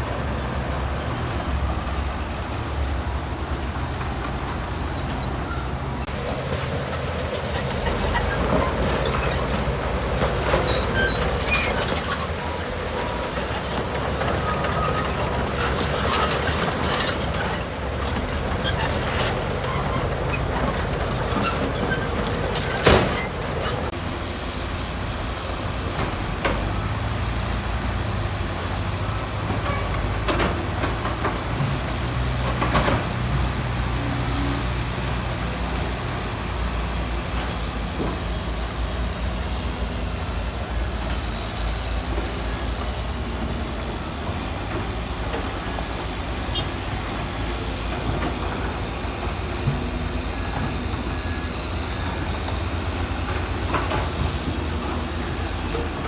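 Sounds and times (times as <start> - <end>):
diesel engine running: 0.0 - 56.0
knocks and clanks: 6.1 - 24.0.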